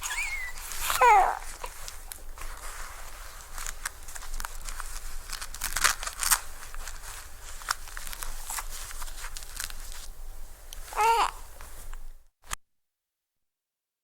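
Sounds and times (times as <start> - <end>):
diaper crinkling and rustling: 0.0 - 12.1.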